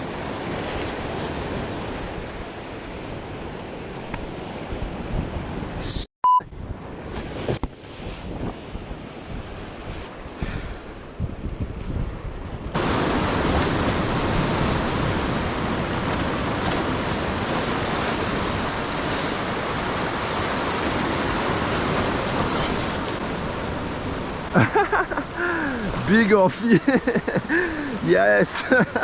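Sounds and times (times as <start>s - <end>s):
wind: 0.0s - 29.0s
sea water rushing: 12.8s - 26.5s.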